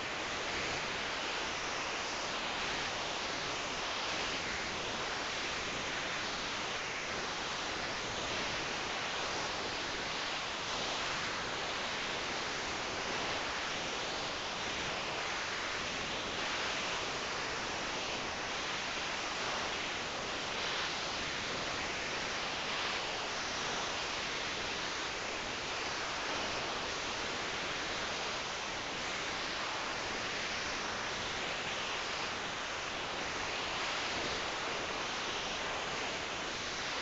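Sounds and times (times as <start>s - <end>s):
steady hiss: 0.0s - 37.0s.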